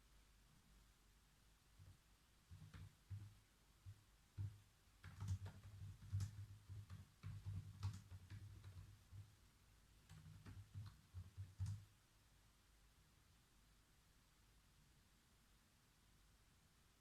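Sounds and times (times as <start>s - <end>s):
computer keyboard typing: 2.5s - 3.4s, 4.4s - 9.3s, 10.0s - 11.9s.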